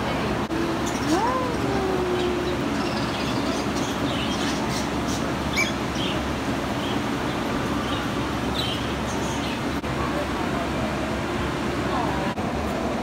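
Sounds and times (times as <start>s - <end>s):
steady rumbling background noise: 0.0s - 13.0s
birds chirping: 0.8s - 9.8s.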